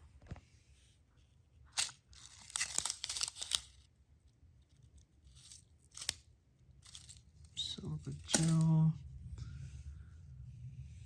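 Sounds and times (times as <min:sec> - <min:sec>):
packaging crinkling and tearing: 0:01.8 - 0:03.9.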